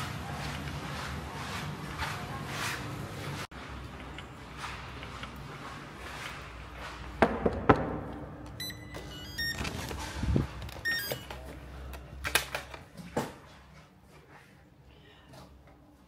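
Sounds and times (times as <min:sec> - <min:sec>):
doors clicking and thudding: 0:07.2 - 0:11.5
electronic beeps: 0:08.6 - 0:09.7, 0:10.8 - 0:11.3.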